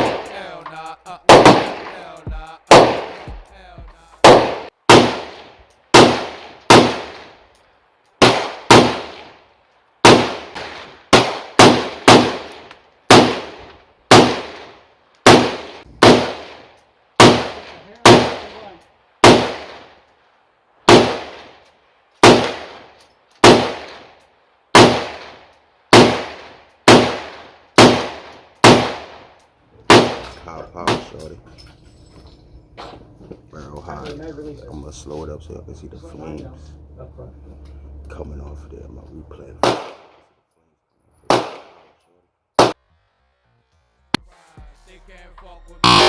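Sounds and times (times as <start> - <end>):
rifle gunshots with echo: 0.0 - 0.6, 1.3 - 3.5, 4.2 - 7.4, 8.2 - 9.4, 10.0 - 19.9, 20.9 - 21.6, 22.2 - 31.1, 39.6 - 40.3, 41.3 - 42.0, 42.6 - 42.8.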